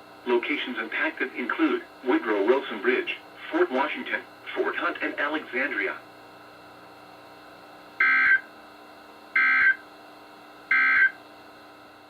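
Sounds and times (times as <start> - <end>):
low radio hiss: 0.0 - 9.0.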